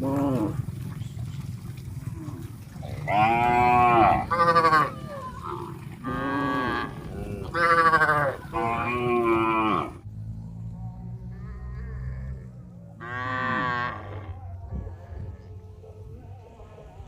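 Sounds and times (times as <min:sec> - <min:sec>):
low background rumble: 0:00.0 - 0:17.0
cattle mooing: 0:02.2 - 0:15.0.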